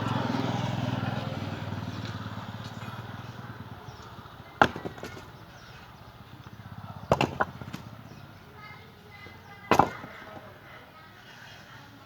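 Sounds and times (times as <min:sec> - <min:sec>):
sharp knocks: 0:04.6 - 0:05.3, 0:07.1 - 0:07.9, 0:09.7 - 0:10.2.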